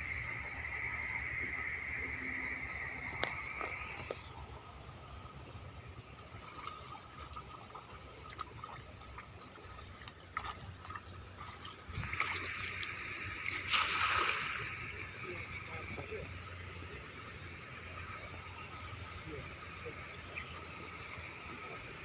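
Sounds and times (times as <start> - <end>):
stream water trickling: 0.0 - 22.0
water splashing: 6.0 - 22.0.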